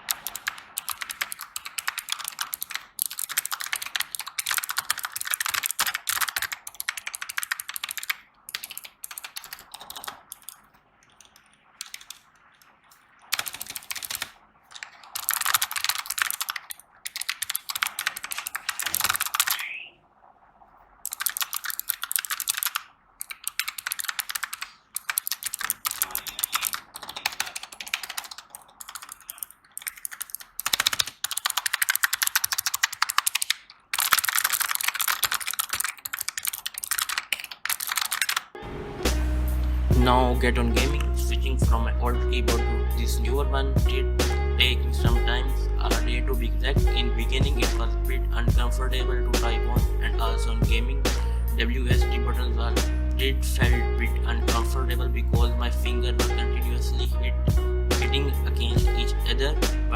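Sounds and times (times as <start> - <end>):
keyboard typing clicks: 0.0 - 12.7, 13.3 - 19.7, 21.1 - 38.6.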